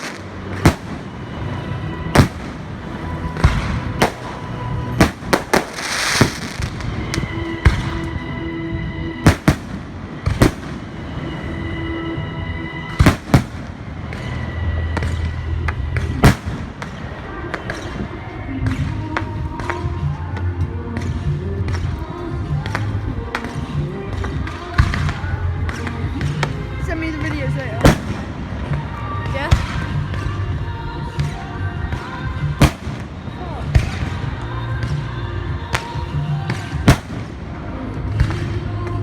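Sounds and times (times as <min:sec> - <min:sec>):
fireworks crackling burst: 0:00.0 - 0:08.2
fireworks bangs: 0:00.0 - 0:08.3, 0:09.2 - 0:11.6, 0:12.8 - 0:19.9, 0:22.6 - 0:30.4, 0:31.9 - 0:35.0, 0:35.6 - 0:38.9.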